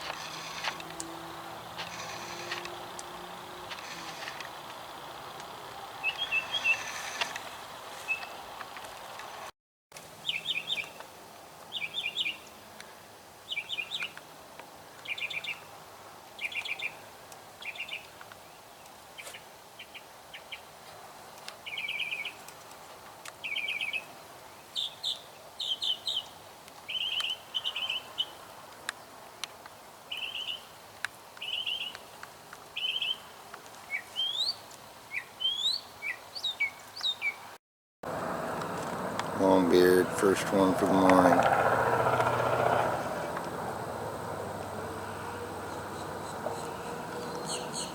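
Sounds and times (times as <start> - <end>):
songbirds singing: 0.3 - 8.5, 10.2 - 11.1, 11.7 - 12.6, 13.5 - 14.2, 15.0 - 15.7, 16.4 - 17.0, 17.6 - 20.7, 21.6 - 22.4, 23.4 - 29.2, 30.1 - 30.8, 31.4 - 32.2, 32.8 - 37.5, 38.2 - 47.9.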